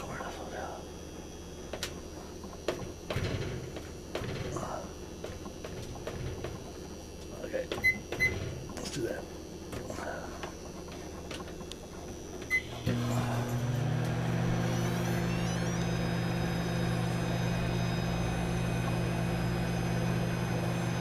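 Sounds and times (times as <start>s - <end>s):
microwave oven humming: 0.0s - 21.0s
microwave beep: 7.8s - 8.4s, 12.4s - 21.0s.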